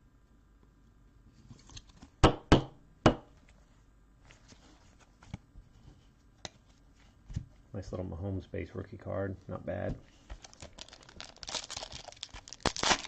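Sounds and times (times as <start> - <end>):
cards rustling: 10.1 - 13.0.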